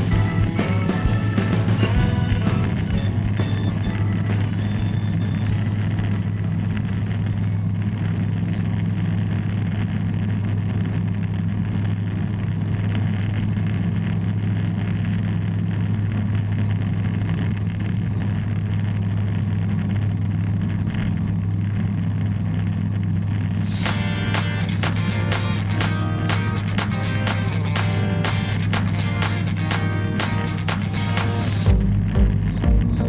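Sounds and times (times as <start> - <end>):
aircraft engine drone: 0.0 - 13.4, 23.2 - 32.1.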